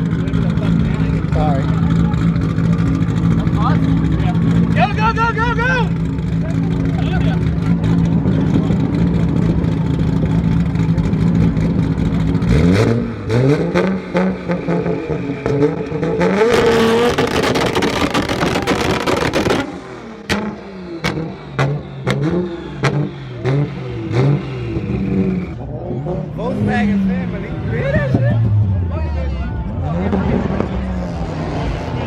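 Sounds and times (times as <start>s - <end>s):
car engine revving: 0.0s - 32.0s
exhaust pops: 15.4s - 24.1s.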